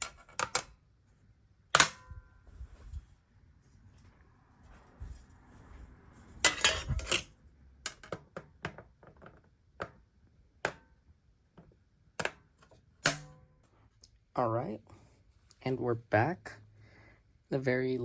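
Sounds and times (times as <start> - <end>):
clattering scrape: 4.8 - 7.4.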